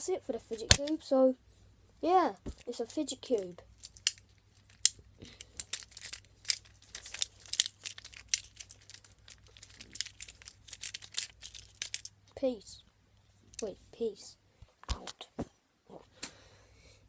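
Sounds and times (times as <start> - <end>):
plastic crinkling: 3.8 - 12.1.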